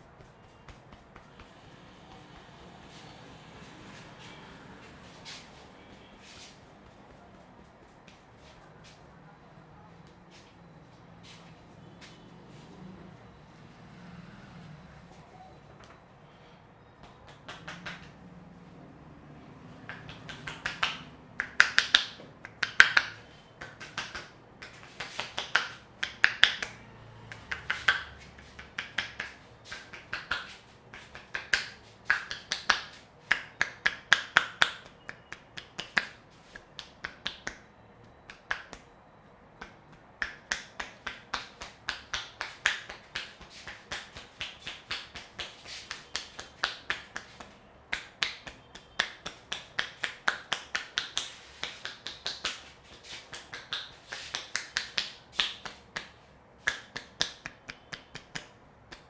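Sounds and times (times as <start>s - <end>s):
hands slapping scalp: 0.0s - 3.0s, 5.0s - 9.0s, 17.0s - 18.2s, 19.9s - 37.7s, 38.3s - 38.9s, 39.6s - 59.0s.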